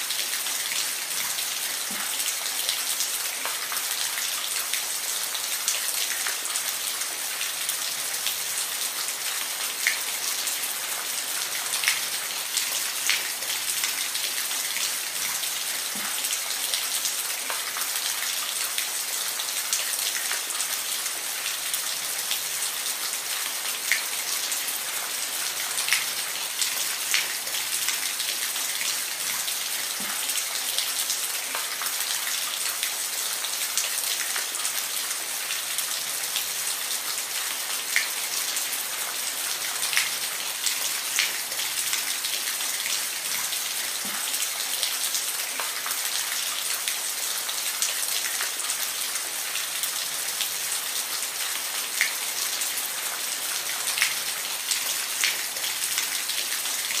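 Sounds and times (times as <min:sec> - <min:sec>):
steady rain hiss: 0:00.0 - 0:57.0.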